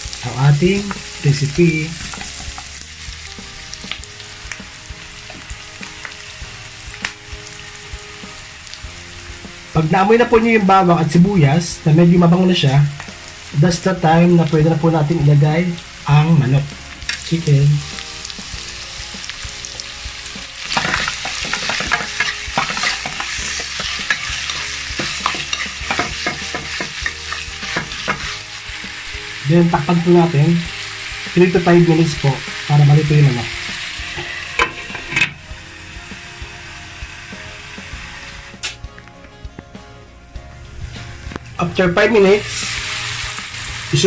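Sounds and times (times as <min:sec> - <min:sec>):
garlic and onion sizzling in oil: 0:00.0 - 0:38.8, 0:40.8 - 0:44.0
spatula scraping a pan: 0:20.6 - 0:28.5, 0:34.1 - 0:35.4.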